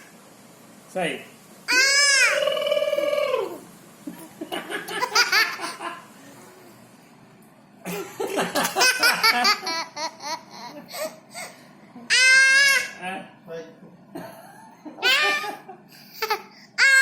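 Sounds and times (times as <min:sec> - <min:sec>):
high-pitched baby voice: 0:01.7 - 0:03.0
baby giggling: 0:04.9 - 0:05.8.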